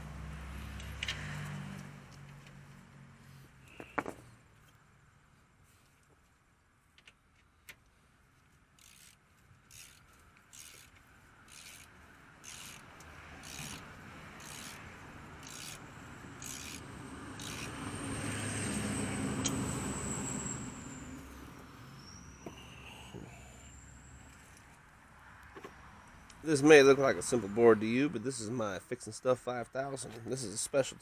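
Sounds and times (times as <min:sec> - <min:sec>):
vehicle passing by: 0:00.0 - 0:04.4, 0:11.3 - 0:24.3, 0:25.1 - 0:28.7
thin high whine: 0:17.4 - 0:24.6.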